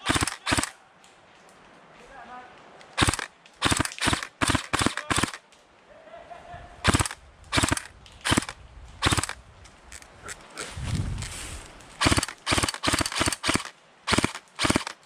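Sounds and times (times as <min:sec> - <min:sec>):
airsoft gun shots: 0:00.0 - 0:00.8, 0:03.0 - 0:05.4, 0:06.8 - 0:09.4, 0:12.0 - 0:15.0.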